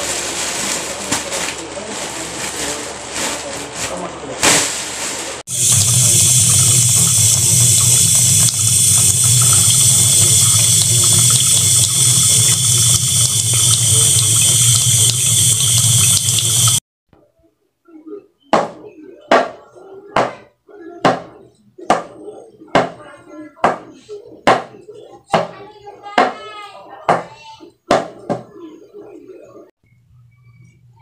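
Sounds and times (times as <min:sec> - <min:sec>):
water running: 0:05.4 - 0:16.8.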